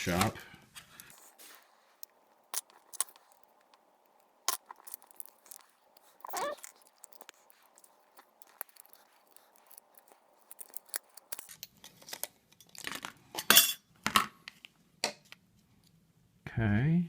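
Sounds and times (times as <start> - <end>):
scrapes and knocks: 0.8 - 11.6
light clicks and clinks of parts: 1.0 - 12.8.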